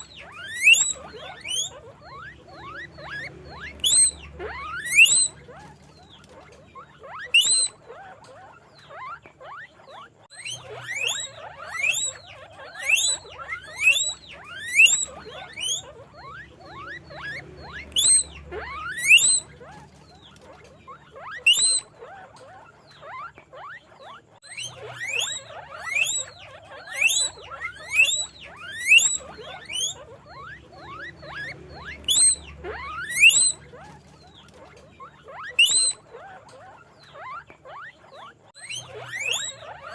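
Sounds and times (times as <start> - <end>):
guinea pigs wheeking: 0.0 - 39.9.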